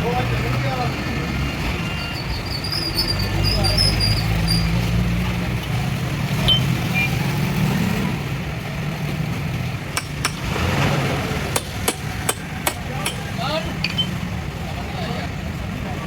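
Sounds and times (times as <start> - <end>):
sharp knocks: 10.0 - 10.6, 11.5 - 13.3.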